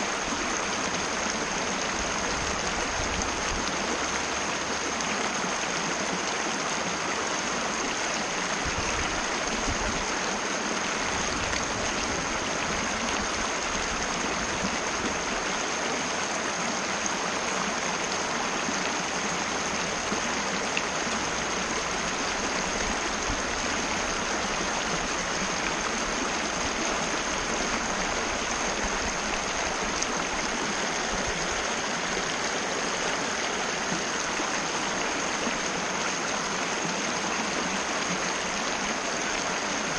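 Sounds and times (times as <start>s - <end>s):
river flowing over rocks: 0.0s - 39.9s.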